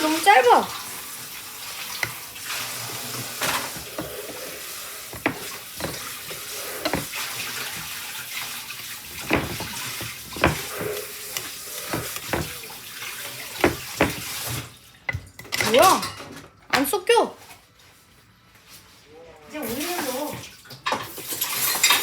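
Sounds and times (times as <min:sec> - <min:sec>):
wet stirring in a bowl: 0:01.7 - 0:14.6
spoon clicks and knocks: 0:05.1 - 0:07.1, 0:09.1 - 0:12.6, 0:13.6 - 0:14.3.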